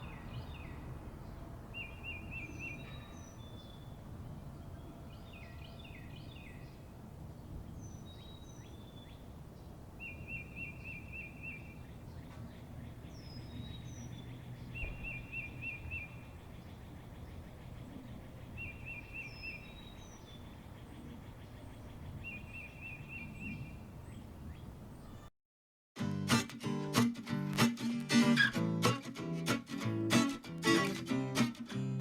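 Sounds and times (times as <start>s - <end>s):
songbirds singing: 0.0s - 25.3s.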